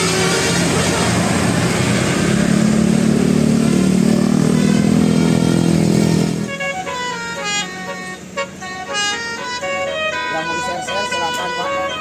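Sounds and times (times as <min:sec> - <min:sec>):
vehicle engine driving past: 0:00.0 - 0:07.0
musical horn: 0:00.0 - 0:12.0.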